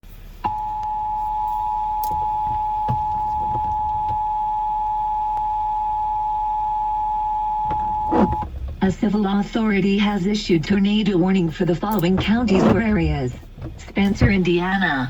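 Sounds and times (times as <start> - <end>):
two-tone alert alarm: 0.4 - 8.5.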